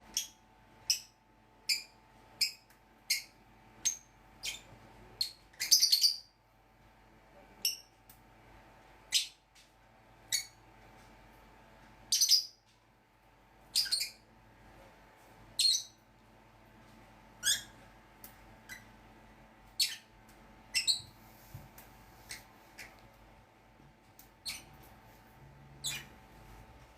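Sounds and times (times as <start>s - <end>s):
birds chirping: 1.7s - 6.4s, 12.1s - 12.6s, 13.7s - 14.2s, 15.6s - 16.0s, 19.6s - 21.2s, 24.2s - 24.8s, 25.8s - 26.2s.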